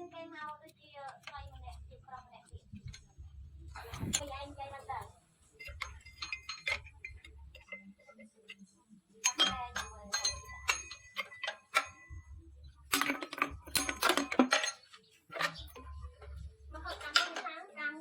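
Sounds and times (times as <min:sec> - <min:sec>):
metal tools clinking: 0:02.8 - 0:17.5.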